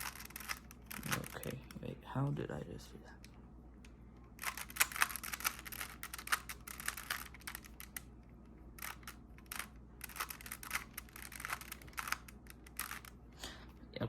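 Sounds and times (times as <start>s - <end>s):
puzzle cube clicking turns: 0.0s - 1.8s, 4.4s - 8.1s, 8.8s - 13.2s.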